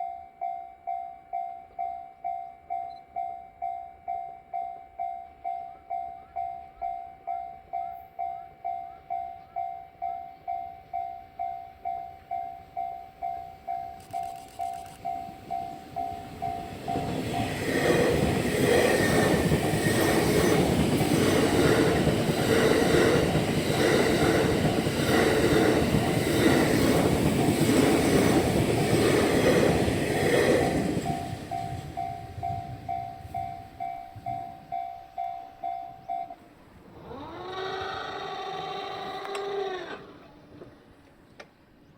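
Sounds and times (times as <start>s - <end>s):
level-crossing bell dinging: 0.0s - 18.7s, 30.7s - 36.6s.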